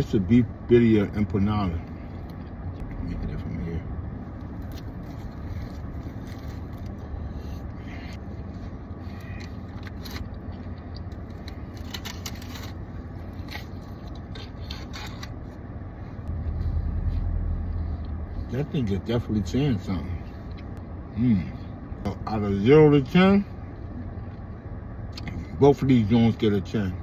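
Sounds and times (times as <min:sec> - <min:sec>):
steady low rumble: 0:00.0 - 0:27.0
food packaging crinkles and scrapes: 0:04.6 - 0:07.6, 0:09.0 - 0:15.6.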